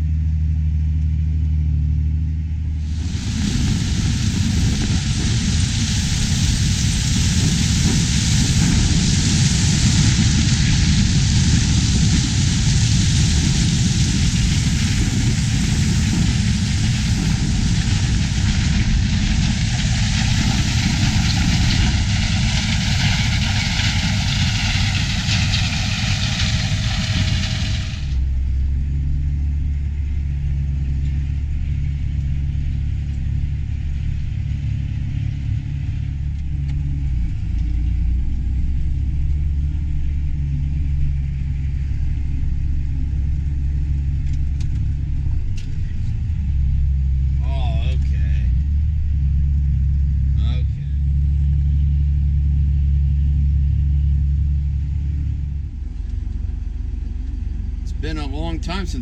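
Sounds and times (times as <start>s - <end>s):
low engine hum: 0.0s - 59.0s
combine harvester rushing noise: 2.6s - 28.6s, 41.3s - 51.8s, 54.0s - 59.0s.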